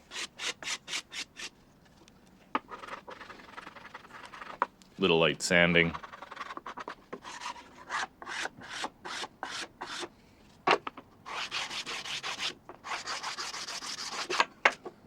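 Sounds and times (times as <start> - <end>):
sandpaper rasping on wood: 6.0 - 10.1, 11.3 - 14.4.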